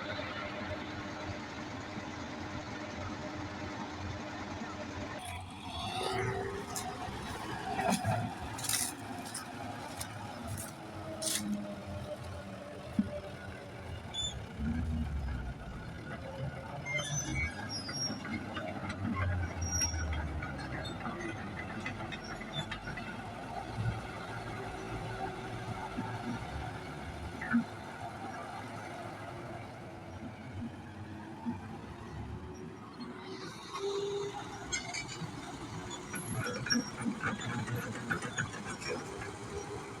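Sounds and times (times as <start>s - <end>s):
excavator engine running: 0.0s - 40.0s
heavy machinery rumbling: 5.2s - 16.7s.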